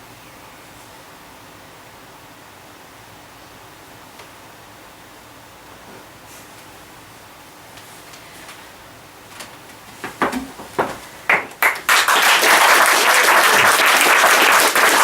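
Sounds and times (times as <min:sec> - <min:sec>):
audience applauding: 0:10.2 - 0:15.0.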